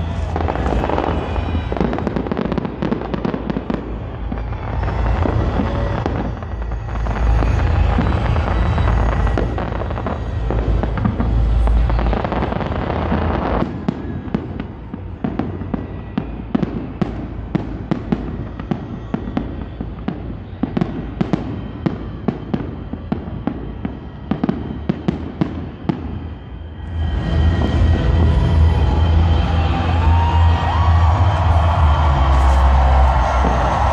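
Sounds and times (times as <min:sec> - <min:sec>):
fireworks booming: 0:00.0 - 0:33.9
fireworks cracking and popping: 0:00.0 - 0:33.9
low rumble: 0:26.8 - 0:33.9.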